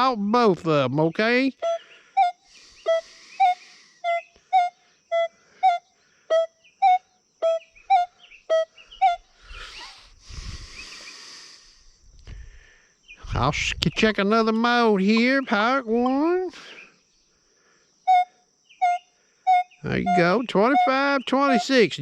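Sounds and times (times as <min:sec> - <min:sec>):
metal detector beeping: 0:00.0 - 0:10.0, 0:13.2 - 0:16.7, 0:18.1 - 0:22.0.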